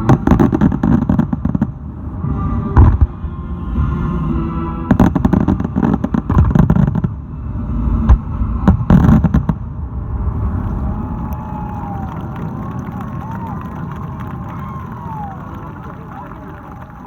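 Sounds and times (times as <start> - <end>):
fireworks bursting: 0.0 - 2.2, 4.9 - 7.2, 8.0 - 9.7
low rumble: 0.0 - 17.0.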